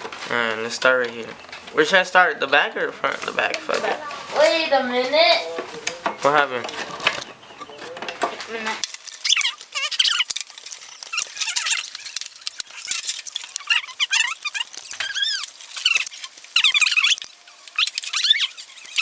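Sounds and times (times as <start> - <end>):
scattered clicks: 8.8 - 19.0
sped-up squeaky chirps: 8.8 - 19.0.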